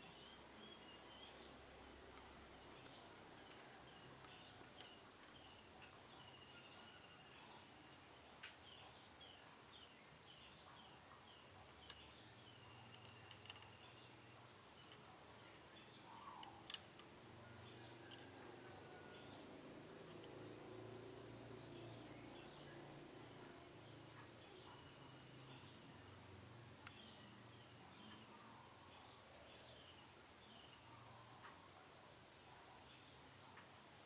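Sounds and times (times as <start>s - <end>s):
sharp clicks: 12.8s - 14.0s, 16.4s - 17.2s.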